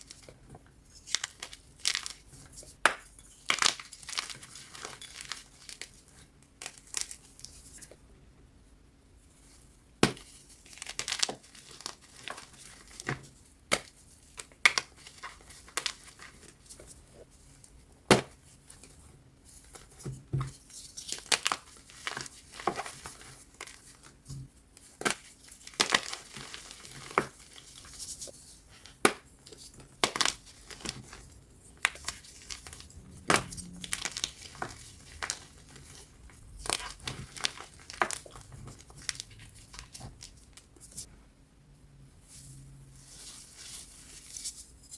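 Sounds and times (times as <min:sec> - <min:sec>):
chalk blocks being crushed: 0:01.0 - 0:06.0, 0:24.9 - 0:40.4.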